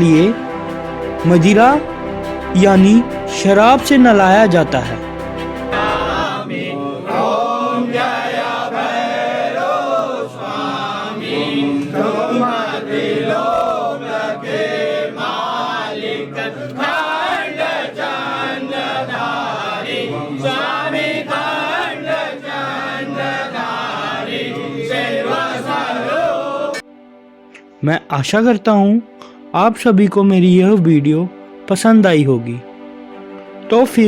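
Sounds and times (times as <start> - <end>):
voices chanting a mantra: 0.0 - 26.9.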